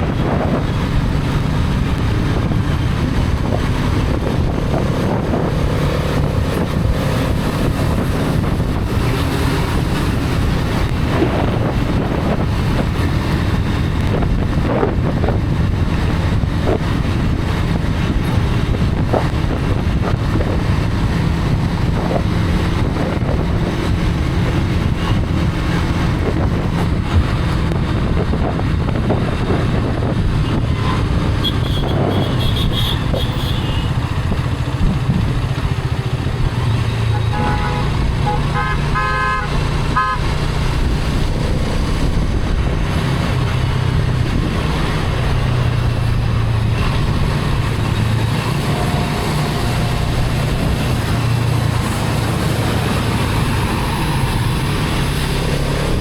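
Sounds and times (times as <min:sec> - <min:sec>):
motorcycle engine cruising: 0:00.0 - 0:56.0
wind rushing over microphone: 0:00.0 - 0:56.0.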